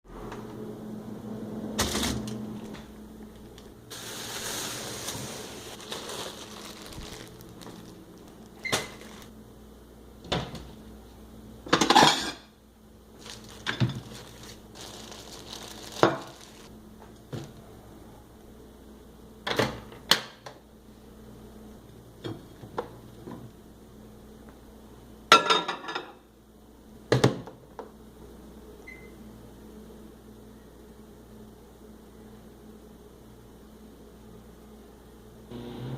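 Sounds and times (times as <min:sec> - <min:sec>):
steady hum: 0:00.1 - 0:19.4
rustling: 0:03.4 - 0:09.3, 0:13.2 - 0:16.7
dishes clattering: 0:11.7 - 0:12.5, 0:25.4 - 0:26.2.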